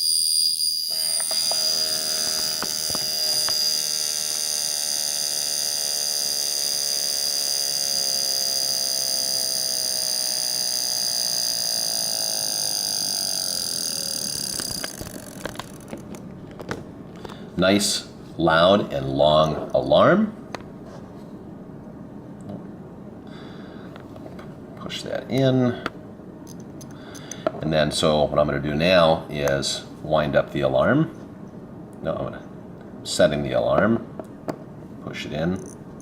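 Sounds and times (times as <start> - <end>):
alarm clock buzzing: 0.0 - 16.0.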